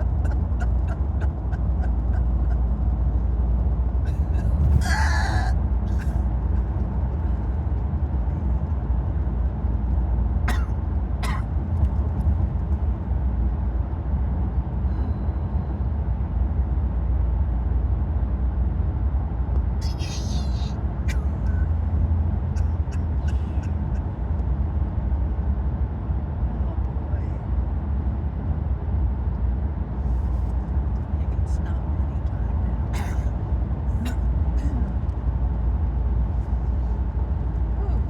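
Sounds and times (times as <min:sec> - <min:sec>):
woman hiccupping: 0:00.0 - 0:02.6, 0:04.1 - 0:06.2
car road rumble: 0:00.0 - 0:38.0.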